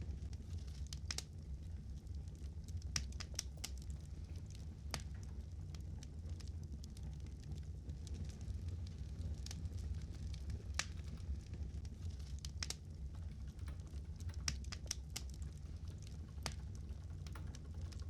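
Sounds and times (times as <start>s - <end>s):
low steady rumble: 0.0s - 18.0s
fire crackling and popping: 0.1s - 18.0s.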